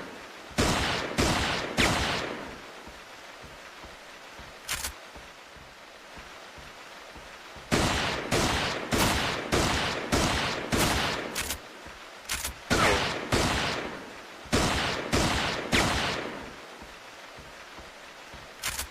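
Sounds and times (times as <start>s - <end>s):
revolver gunshots with echo: 0.6s - 2.6s, 7.7s - 11.6s, 12.7s - 16.5s
light clicks: 4.6s - 5.1s, 11.4s - 11.6s, 12.2s - 12.6s, 18.4s - 18.9s.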